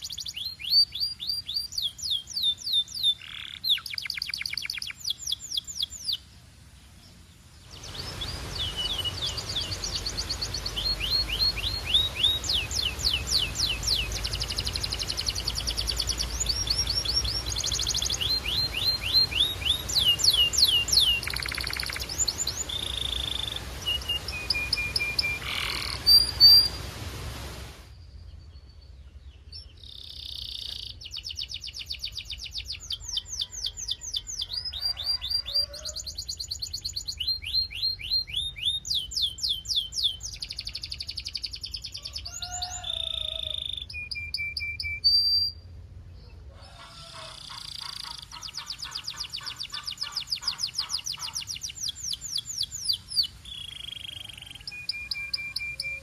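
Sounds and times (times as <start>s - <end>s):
canary singing trills: 0.0s - 6.3s, 7.6s - 26.8s, 28.2s - 56.0s
steady hiss: 3.9s - 28.2s.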